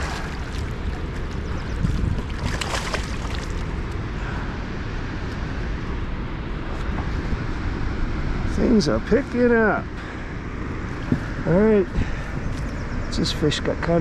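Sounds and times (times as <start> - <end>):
water splash: 0.0 - 3.8
water lapping against kayak: 0.0 - 4.0
wind buffeting microphone: 0.0 - 13.9.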